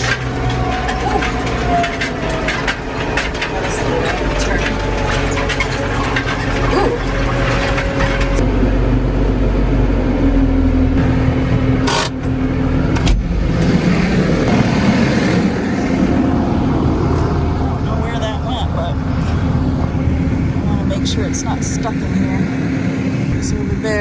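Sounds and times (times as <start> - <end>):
tractor engine running: 0.0 - 24.0.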